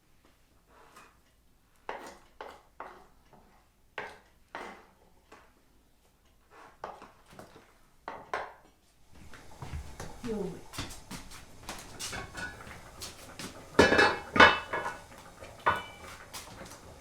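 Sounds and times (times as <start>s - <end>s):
kitchenware knocks and scrapes: 10.8s - 16.7s.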